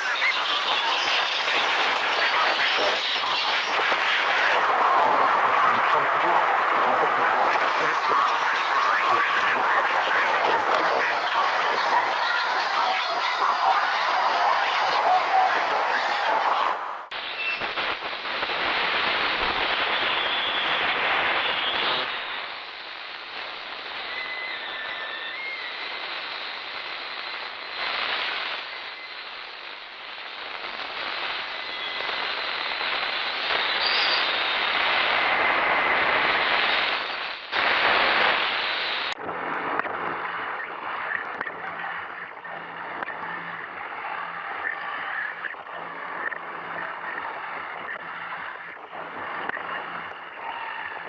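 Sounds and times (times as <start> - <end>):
radio static crackling hiss: 0.0 - 51.0
faint whistling tones: 24.0 - 25.8, 33.6 - 34.4.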